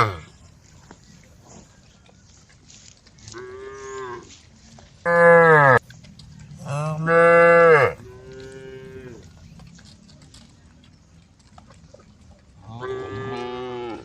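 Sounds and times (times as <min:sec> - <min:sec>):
cows mooing: 0:00.0 - 0:00.3, 0:05.1 - 0:05.8, 0:06.4 - 0:09.4, 0:12.6 - 0:14.0.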